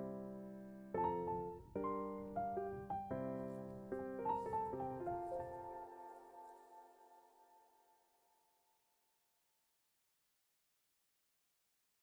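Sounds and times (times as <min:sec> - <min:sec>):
soft piano music: 0:00.0 - 0:08.2.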